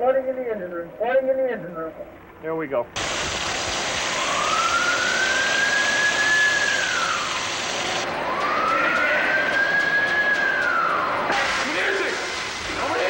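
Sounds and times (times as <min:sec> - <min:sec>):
rushing water flooding: 0:03.0 - 0:13.0
alarm siren: 0:03.8 - 0:12.8.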